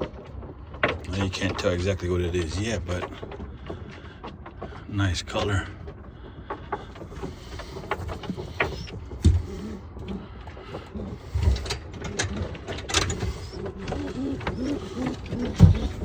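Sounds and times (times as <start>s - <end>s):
handling clicks and knocks: 0.0s - 16.0s
pigeons cooing: 6.2s - 16.0s
dull thumps: 7.1s - 9.9s, 13.0s - 16.0s.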